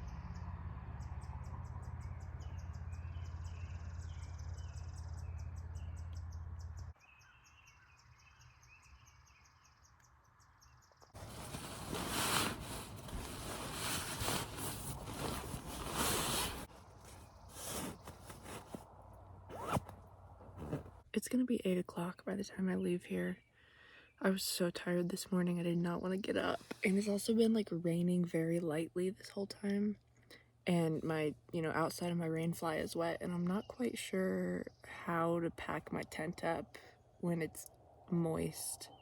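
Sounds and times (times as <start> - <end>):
rustling and handling noise: 11.2 - 18.9, 19.5 - 21.0.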